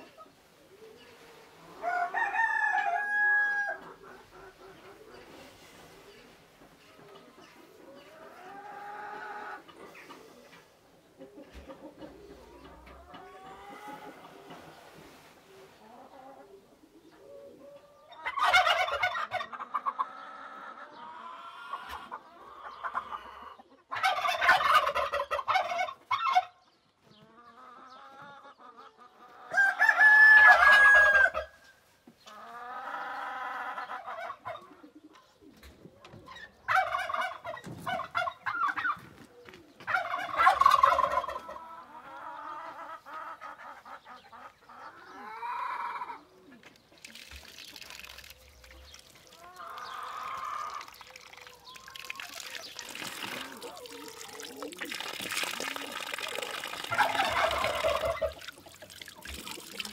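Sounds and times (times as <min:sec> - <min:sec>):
chicken calls: 0:00.0 - 0:59.9
rooster crowing: 0:01.8 - 0:03.8, 0:29.5 - 0:31.5.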